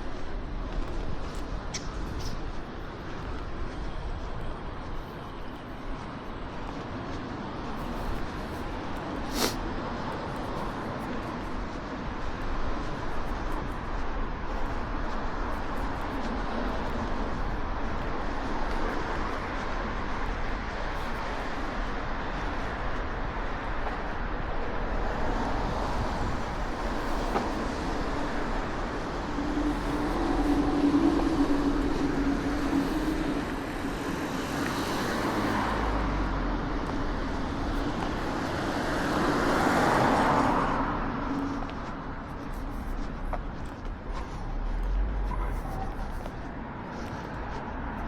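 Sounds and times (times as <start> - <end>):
wind rushing: 25.1 - 42.7.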